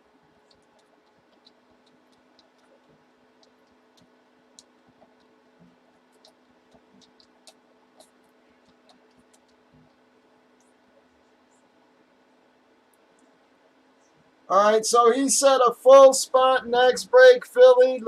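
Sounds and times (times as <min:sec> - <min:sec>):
steady low hum: 0:00.0 - 0:18.0
computer mouse clicks: 0:00.3 - 0:11.7.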